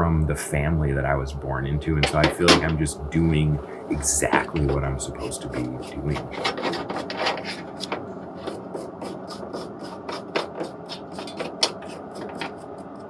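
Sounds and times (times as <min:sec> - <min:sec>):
hand tool scraping metal: 0:03.5 - 0:07.7.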